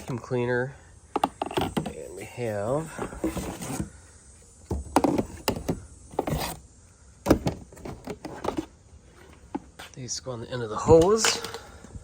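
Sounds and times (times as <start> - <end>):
plastic parts knocking and clattering: 1.1 - 2.0, 4.7 - 6.5, 7.2 - 8.7
cardboard packaging rustle: 2.8 - 4.0.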